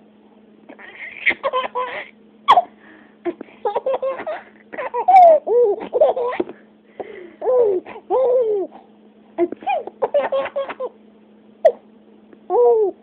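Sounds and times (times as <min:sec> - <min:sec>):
young child giggling: 0:03.3 - 0:06.5.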